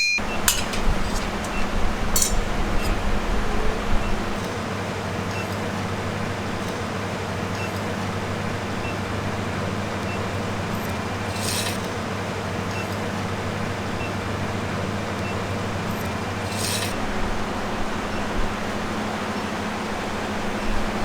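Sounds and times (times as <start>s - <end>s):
motor humming: 0.2s - 4.5s.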